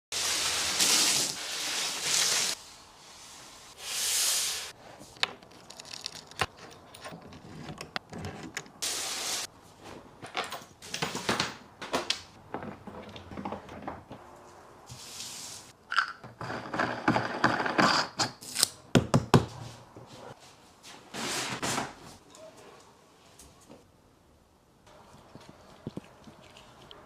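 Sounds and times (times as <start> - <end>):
clicks and crackles: 5.2 - 8.8.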